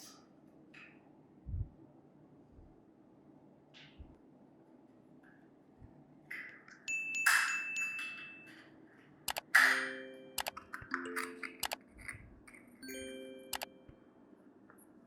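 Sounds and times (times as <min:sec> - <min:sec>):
light clicks: 0:10.4 - 0:12.6.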